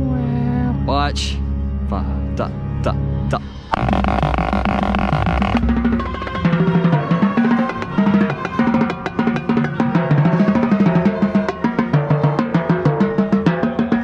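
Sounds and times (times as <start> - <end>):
band playing melody: 3.3 - 14.0
marching snare drum rolls: 3.7 - 14.0.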